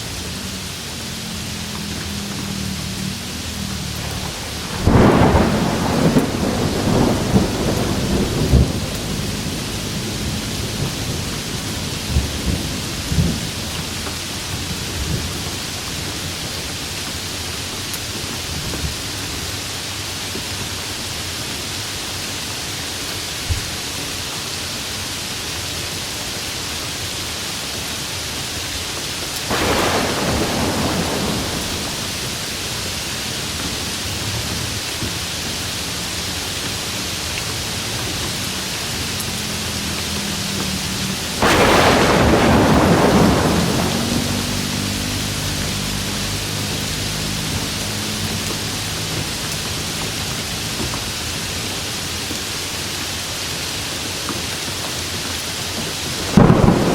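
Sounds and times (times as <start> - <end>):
heavy rain: 0.0 - 56.9
thunder rumbling and cracking: 1.4 - 17.3, 29.3 - 35.6, 36.2 - 51.3, 55.8 - 56.9.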